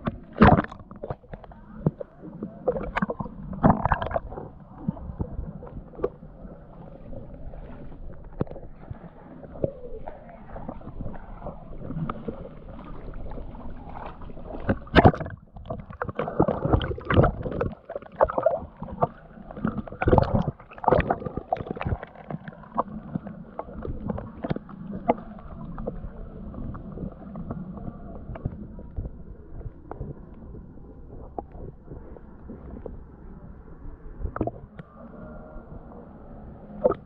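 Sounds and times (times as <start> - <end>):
water splashing and gurgling: 0.0 - 37.0
knocks in water: 0.4 - 0.8, 14.7 - 15.4.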